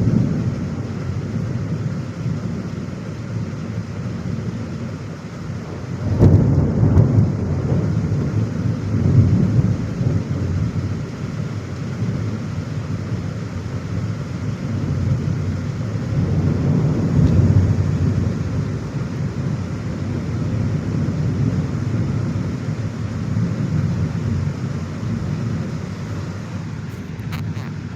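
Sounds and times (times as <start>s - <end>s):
steady rain: 0.0s - 27.9s
thunder rolling: 5.5s - 12.3s, 14.7s - 27.9s.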